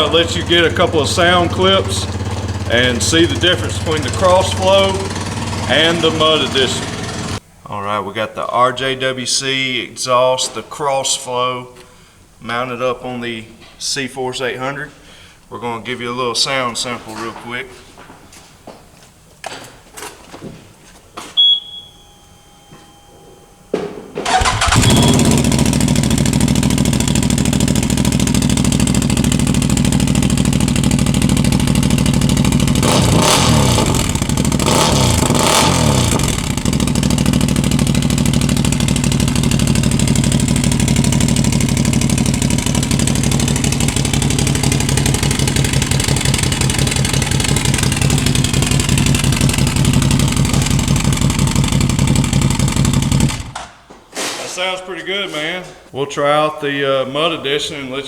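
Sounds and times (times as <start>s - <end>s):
engine revving: 0.0s - 7.4s, 24.2s - 53.6s
engine starting and idling: 0.0s - 7.4s, 24.2s - 53.7s.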